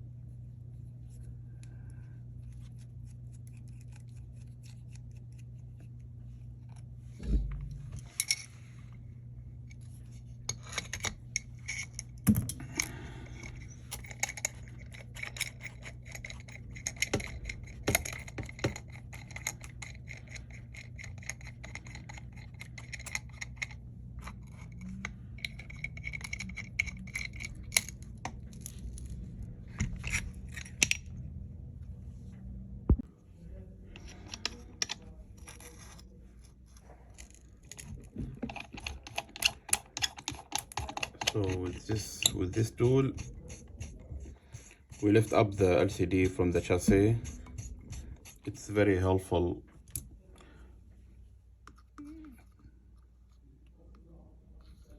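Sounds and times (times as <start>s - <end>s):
steady low hum: 0.0s - 54.9s
small tools clicking and scraping: 9.7s - 31.1s, 33.9s - 49.1s.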